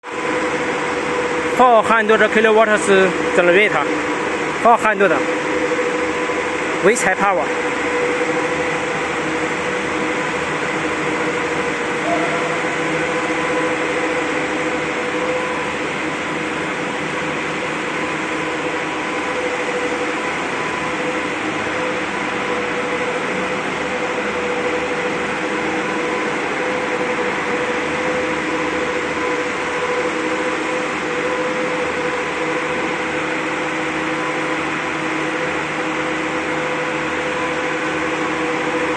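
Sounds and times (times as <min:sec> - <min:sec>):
diesel generator engine droning: 0:00.0 - 0:38.9.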